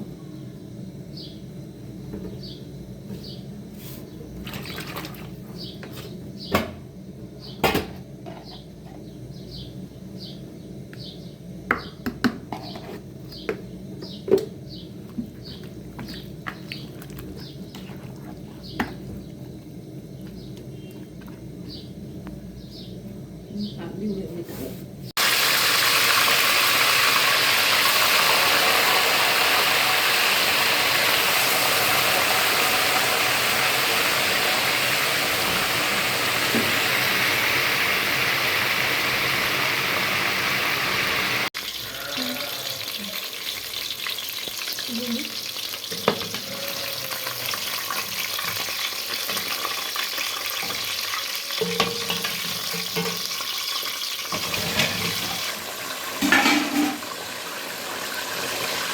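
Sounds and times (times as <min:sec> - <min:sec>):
chicken frying in hot oil: 0:25.2 - 0:58.9.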